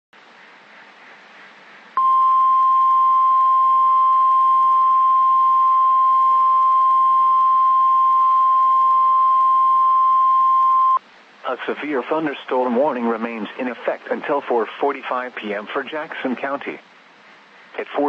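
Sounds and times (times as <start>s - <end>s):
faint radio hiss: 0.2s - 18.0s
loud high alarm beep: 2.0s - 11.0s.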